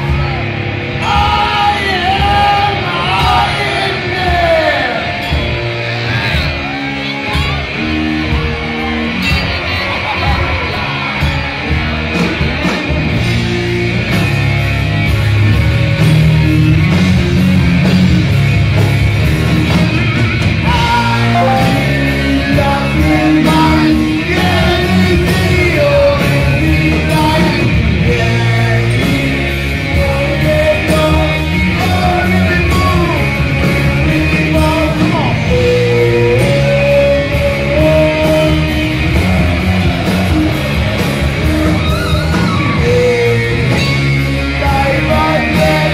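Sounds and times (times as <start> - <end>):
heavy rock band: 0.0 - 45.9
person singing: 1.0 - 5.3, 20.6 - 40.6, 41.6 - 45.9.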